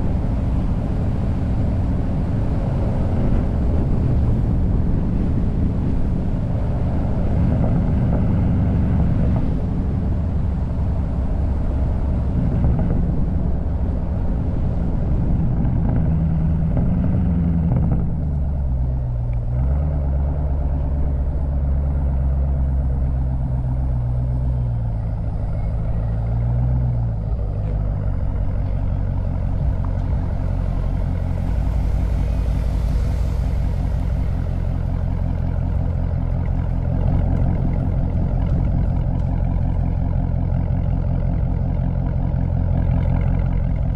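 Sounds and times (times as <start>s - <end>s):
engine running through exhaust: 0.0s - 43.9s.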